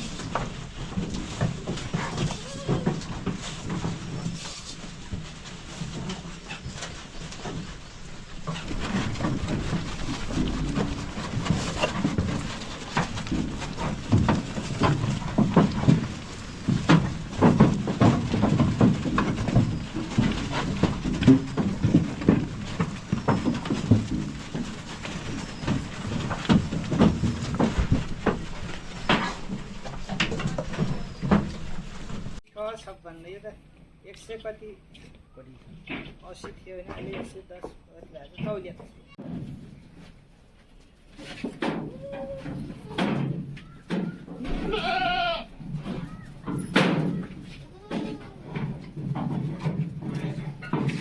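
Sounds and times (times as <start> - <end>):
knocks and clatter: 0.0 - 32.4, 35.7 - 40.1, 41.2 - 51.0.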